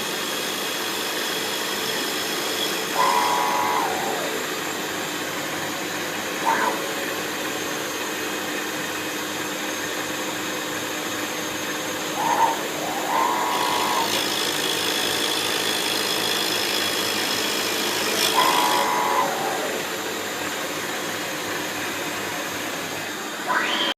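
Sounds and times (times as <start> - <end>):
high-pitched cutting whine: 0.0 - 23.9
milling machine hum: 0.0 - 23.9.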